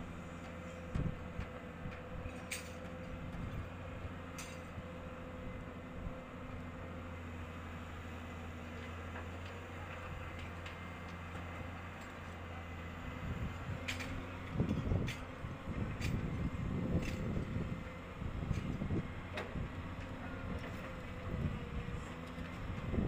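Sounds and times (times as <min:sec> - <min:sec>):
heavy machine engine running: 0:00.0 - 0:23.0.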